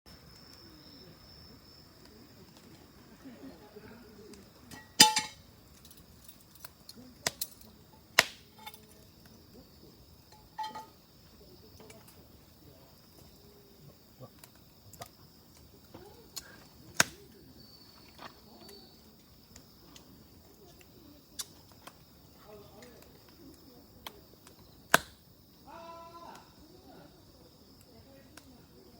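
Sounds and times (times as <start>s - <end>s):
wood fire crackling and popping: 4.1s - 25.4s.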